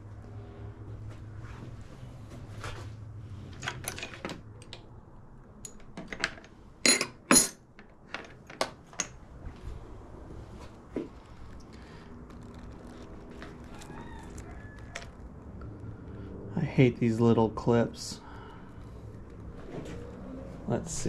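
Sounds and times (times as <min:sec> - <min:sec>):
metal tools clinking: 0:05.6 - 0:09.2.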